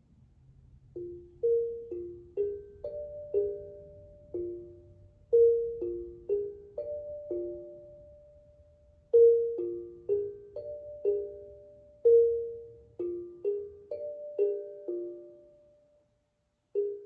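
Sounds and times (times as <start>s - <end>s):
steel tongue drum notes: 0.9s - 15.9s.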